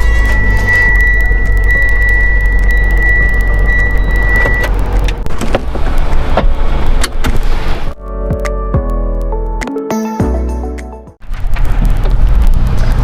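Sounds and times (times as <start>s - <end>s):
steady high-pitched tone: 0.0s - 4.7s
car driving rumble inside cabin: 0.0s - 8.0s, 11.2s - 13.0s.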